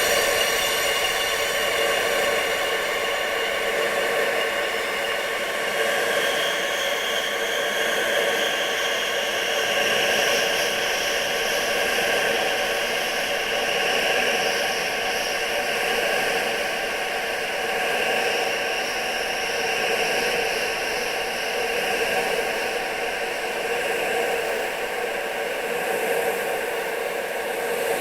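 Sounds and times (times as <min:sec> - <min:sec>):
rushing wind: 0:00.0 - 0:05.0.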